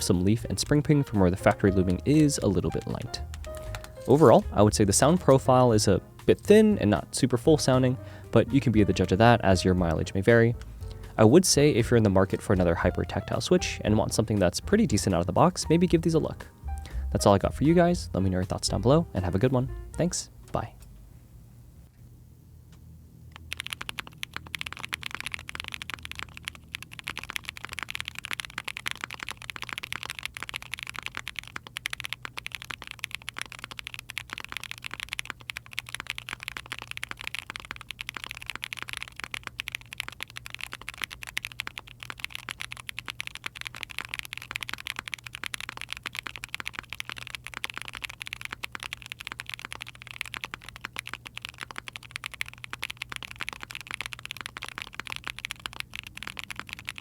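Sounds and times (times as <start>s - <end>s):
fast typing on mechanical keyboard: 0.0s - 19.7s, 23.3s - 57.0s.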